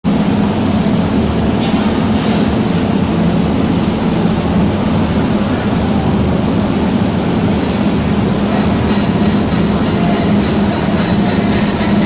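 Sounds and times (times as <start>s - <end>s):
welder arc crackling buzz: 0.1s - 5.2s.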